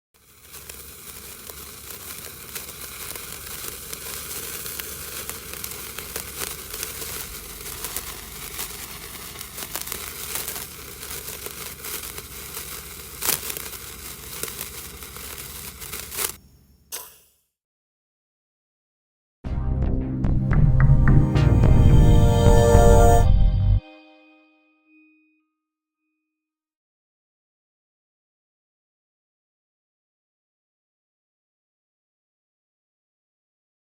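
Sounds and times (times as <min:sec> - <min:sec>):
sparkler fizzing crackle: 0:00.2 - 0:17.4
sparkler pops: 0:00.2 - 0:17.5.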